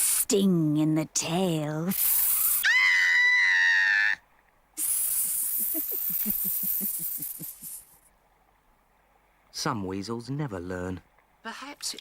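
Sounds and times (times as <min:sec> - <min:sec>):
cartoon snake hiss: 0:01.9 - 0:02.8, 0:04.8 - 0:07.9.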